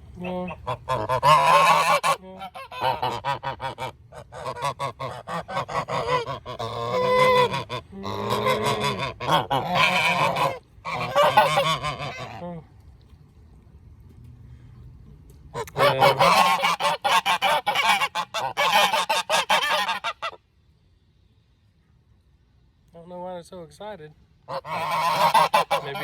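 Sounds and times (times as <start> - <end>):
geese honking: 0.1 - 12.4, 15.5 - 20.4, 24.5 - 26.0.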